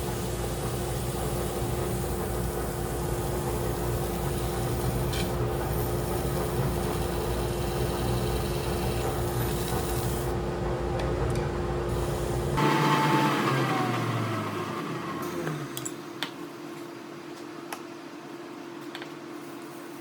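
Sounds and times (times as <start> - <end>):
woodworking machine humming: 11.9 - 16.3.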